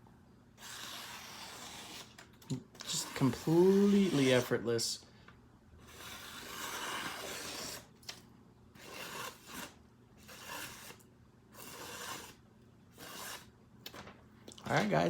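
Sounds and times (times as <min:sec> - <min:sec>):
knife slicing newspaper: 0:00.6 - 0:02.2, 0:02.8 - 0:04.6, 0:05.9 - 0:07.9, 0:08.8 - 0:11.0, 0:11.6 - 0:12.4, 0:13.0 - 0:13.5.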